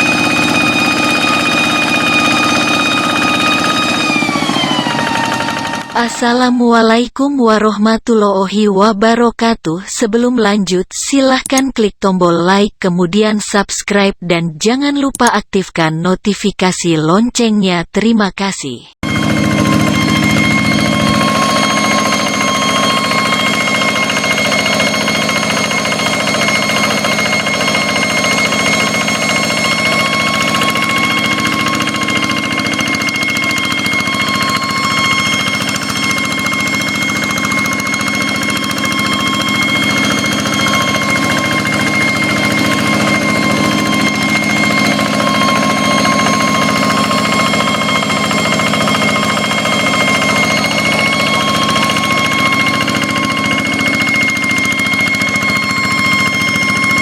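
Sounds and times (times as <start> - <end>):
high whine: 0.0 - 6.6, 19.0 - 57.0.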